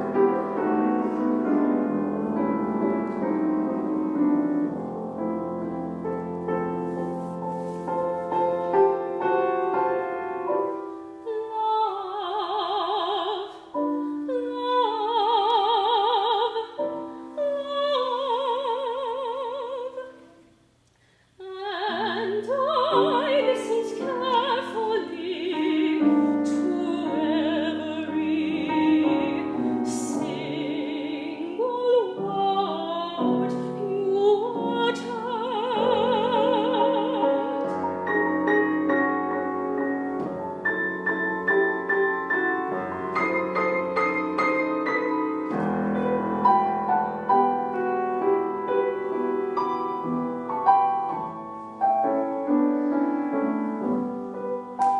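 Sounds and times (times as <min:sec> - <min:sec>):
piano accompaniment: 0:00.0 - 0:20.3, 0:21.4 - 0:54.9
soprano singing with vibrato: 0:11.0 - 0:20.4, 0:21.4 - 0:39.4.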